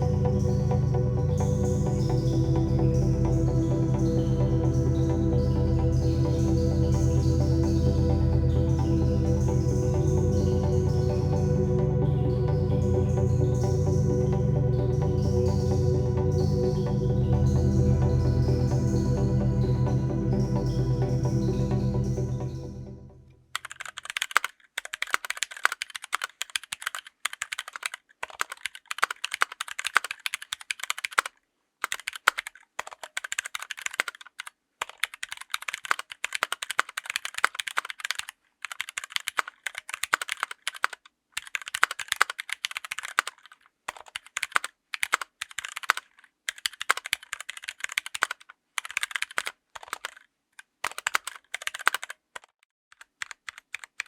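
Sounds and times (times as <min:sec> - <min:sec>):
mechanical keyboard typing: 0:23.5 - 0:54.0.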